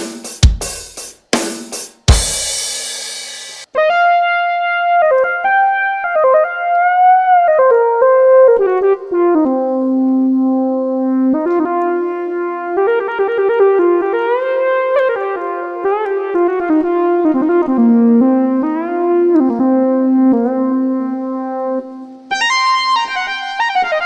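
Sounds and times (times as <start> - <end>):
cymbal-like hit: 2.1 - 3.7
synthesizer keyboard melody: 3.7 - 24.0.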